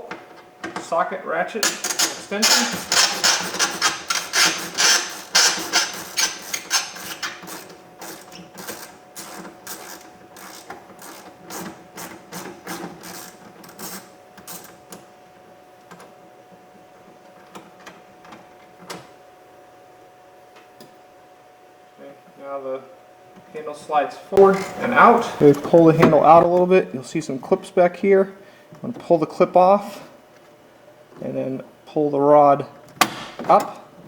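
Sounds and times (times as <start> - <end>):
hand ratchet clicking: 1.6 - 14.7.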